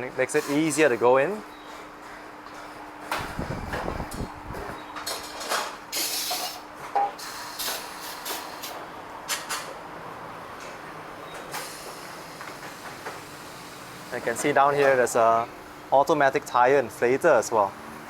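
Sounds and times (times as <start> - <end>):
compressed air hisses: 6.0 - 6.6.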